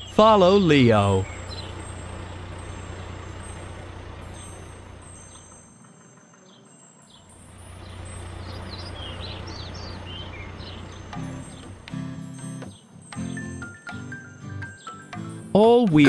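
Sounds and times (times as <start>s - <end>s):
birds chirping: 0.0s - 16.0s
cartoon truck engine hum: 0.0s - 16.0s
music: 10.6s - 16.0s.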